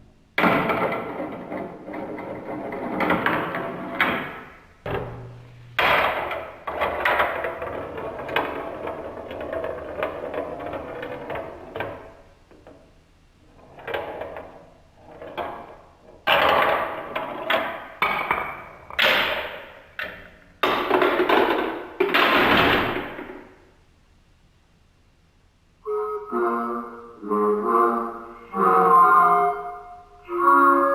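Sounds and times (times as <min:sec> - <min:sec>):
marbles rolling down wooden run: 0:00.6 - 0:04.4, 0:06.3 - 0:12.1.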